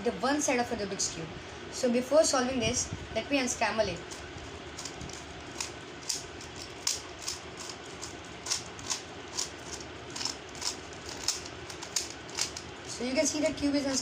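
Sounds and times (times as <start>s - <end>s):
steady low hum: 0.0s - 14.0s
plastic puzzle cube clicking: 4.8s - 12.7s.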